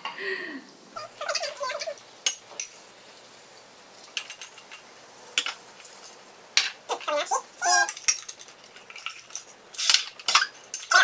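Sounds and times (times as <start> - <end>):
cutlery clinking on plates: 7.8 - 11.0.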